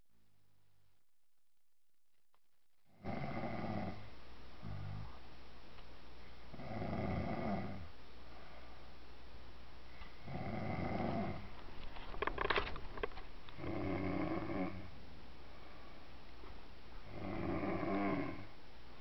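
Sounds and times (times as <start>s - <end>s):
person snoring: 2.9s - 5.2s, 6.6s - 7.9s, 10.2s - 11.5s, 13.6s - 14.9s, 17.1s - 18.5s
crackling clicks: 11.6s - 13.6s.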